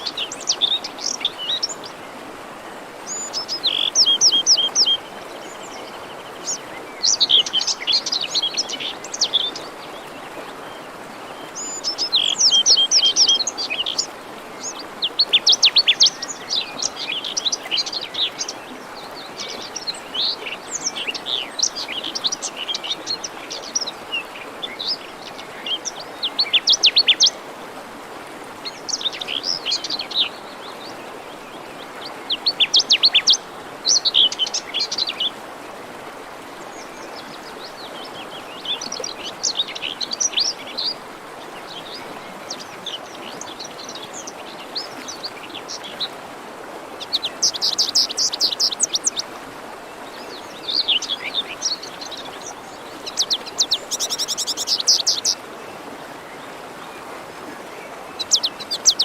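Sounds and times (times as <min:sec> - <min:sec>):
songbirds chirping and trilling: 0:00.0 - 0:27.7, 0:28.4 - 0:35.4, 0:36.2 - 0:59.0
forest stream flowing: 0:00.0 - 0:59.0.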